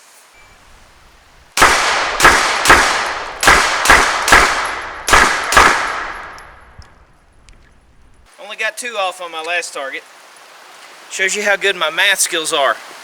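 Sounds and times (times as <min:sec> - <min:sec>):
pistol shots with echo: 0:01.6 - 0:08.2.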